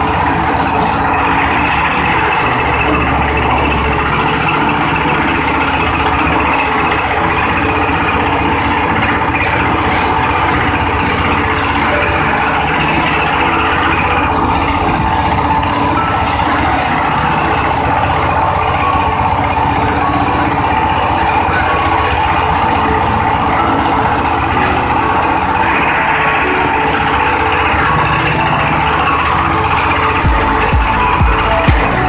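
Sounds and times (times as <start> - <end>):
machine running loudly: 0.0 - 32.0
low regular thumping: 29.2 - 32.0.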